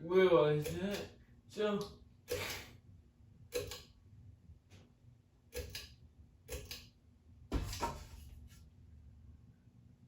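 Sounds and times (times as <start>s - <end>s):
fan parts clicking and knocking: 0.6s - 1.2s.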